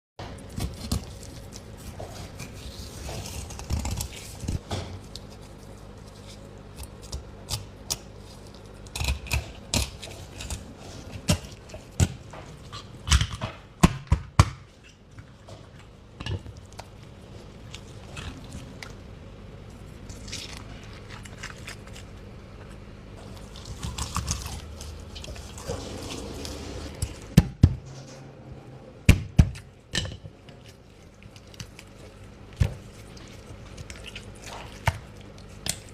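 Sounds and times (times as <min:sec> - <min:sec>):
low hum: 0:16.6 - 0:34.8.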